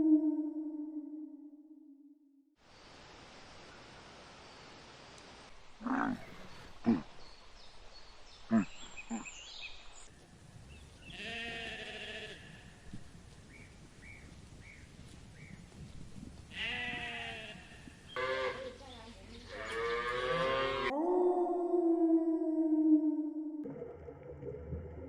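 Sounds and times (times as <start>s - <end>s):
wavering bleating calls: 11.1s - 12.7s, 16.5s - 18.8s, 19.5s - 21.0s.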